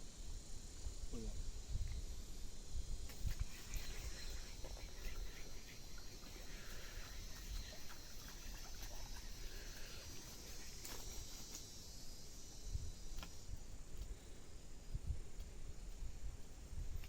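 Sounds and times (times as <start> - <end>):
wind rumble on microphone: 0.0 - 6.1, 12.6 - 17.0
insects chirring: 0.0 - 17.0.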